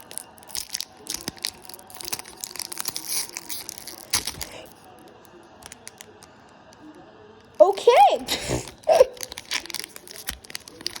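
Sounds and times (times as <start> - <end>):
foil wrapper ripping: 0.0 - 6.3, 8.6 - 11.0
foil wrapper crinkling: 0.0 - 6.6, 8.6 - 11.0.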